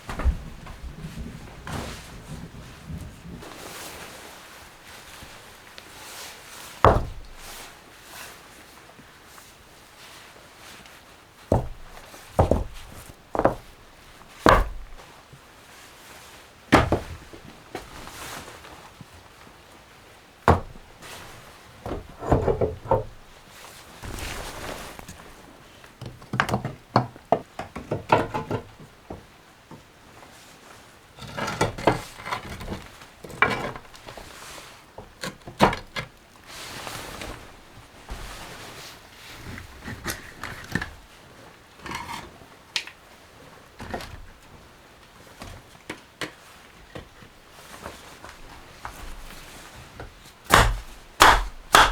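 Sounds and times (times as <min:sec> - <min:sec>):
shuffling: 0:00.0 - 0:07.7, 0:11.5 - 0:15.2, 0:23.2 - 0:25.8, 0:36.5 - 0:39.8.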